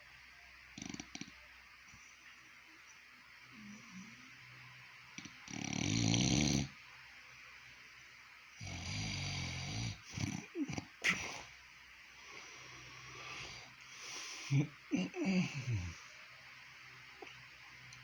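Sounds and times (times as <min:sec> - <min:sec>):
man snoring: 0:00.8 - 0:01.3, 0:05.2 - 0:06.8, 0:08.6 - 0:11.5, 0:12.6 - 0:16.1.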